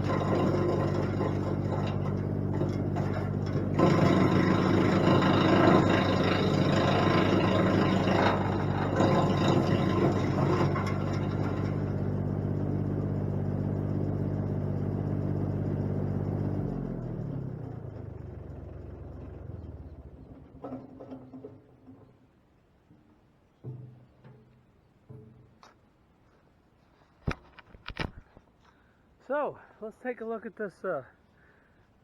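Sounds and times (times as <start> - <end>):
branches grinding in chipper: 0.0 - 21.8
wood chipper engine running: 0.0 - 22.0.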